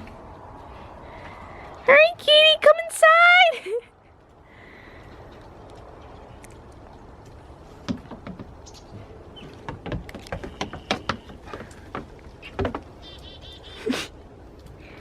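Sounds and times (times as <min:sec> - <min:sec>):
shod paws clacking: 0:05.4 - 0:13.4.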